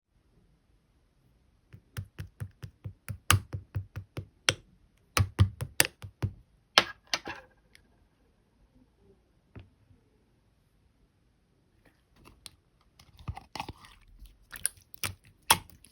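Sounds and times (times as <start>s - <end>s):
slime crackling squish: 13.5s - 15.9s.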